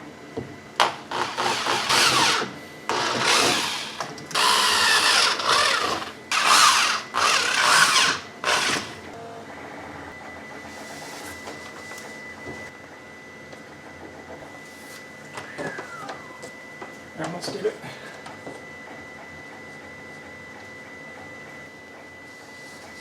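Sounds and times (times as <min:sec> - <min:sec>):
power drill boring holes: 0:00.8 - 0:09.1.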